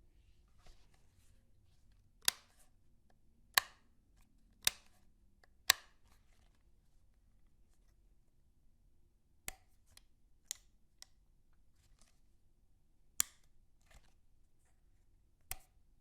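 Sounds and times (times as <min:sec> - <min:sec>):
faint handling rustle: 0:00.1 - 0:02.8.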